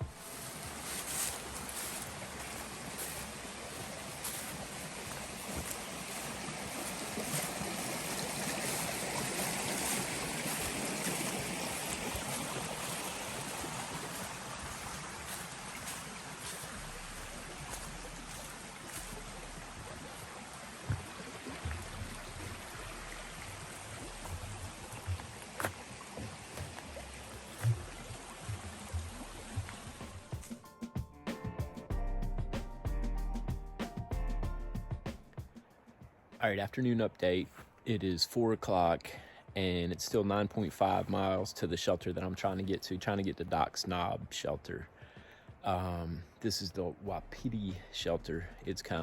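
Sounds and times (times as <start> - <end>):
rushing creek water: 0.0 - 30.7, 39.6 - 49.0
soft low thumps: 16.5 - 20.0, 20.9 - 35.5.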